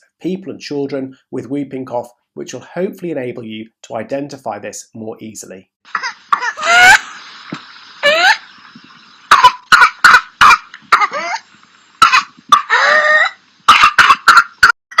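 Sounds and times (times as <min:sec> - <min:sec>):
quick sharp coughs: 0:09.4 - 0:11.4, 0:12.0 - 0:12.8, 0:13.7 - 0:14.5.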